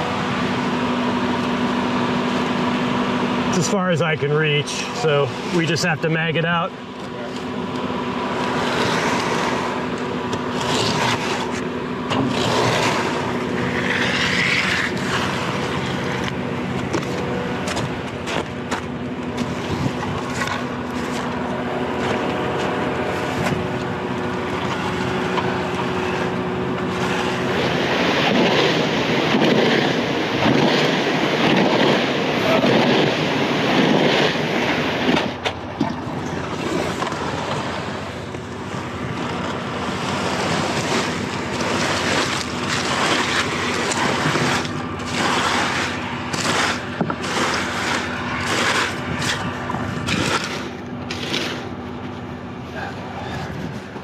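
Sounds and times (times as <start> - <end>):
diesel engine humming: 0.0 - 54.0
scrapes and clicks on wet concrete: 8.4 - 24.0, 39.2 - 52.1
rough rushing scraping noise: 8.4 - 54.0.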